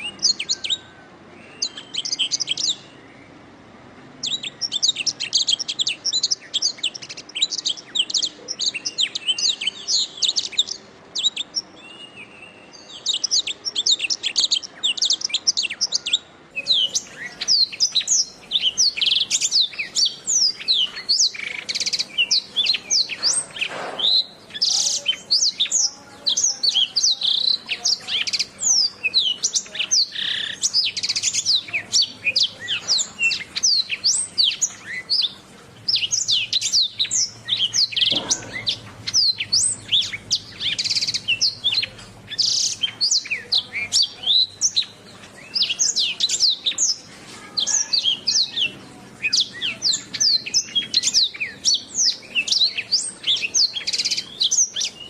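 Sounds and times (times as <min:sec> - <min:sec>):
canary singing: 0:00.0 - 0:55.0.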